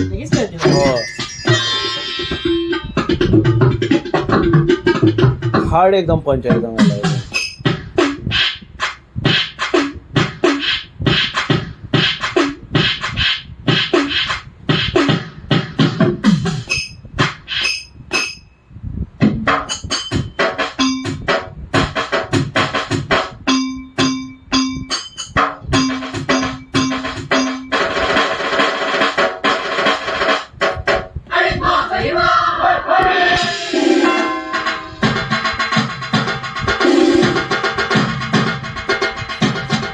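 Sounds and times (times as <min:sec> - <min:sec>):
sustained pitched tone: 0:00.0 - 0:04.5
electronic percussion pad hits: 0:00.0 - 0:05.6, 0:20.4 - 0:30.0, 0:33.3 - 0:39.9.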